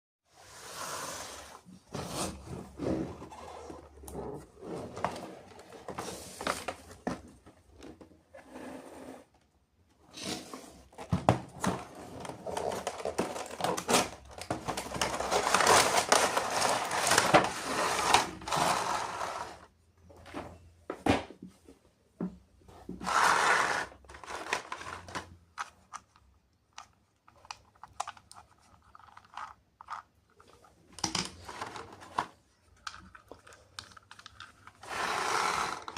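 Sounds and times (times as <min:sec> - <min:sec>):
cardboard and plastic crinkling: 0:11.5 - 0:18.6, 0:24.1 - 0:26.1.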